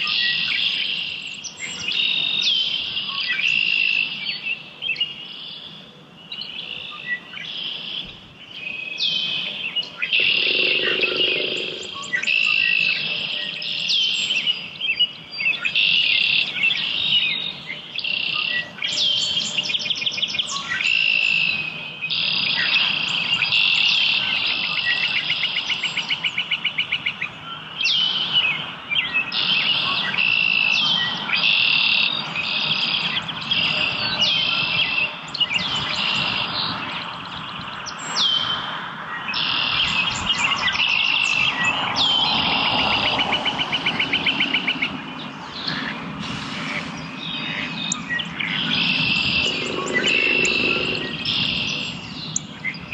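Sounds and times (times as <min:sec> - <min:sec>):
songbirds singing: 0:00.0 - 0:52.9
bird trilling: 0:08.8 - 0:14.1, 0:47.2 - 0:52.2.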